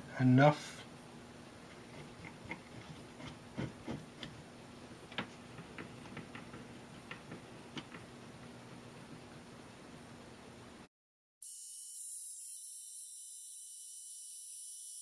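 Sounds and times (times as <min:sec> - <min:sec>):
faint steady hum: 0:00.0 - 0:10.9.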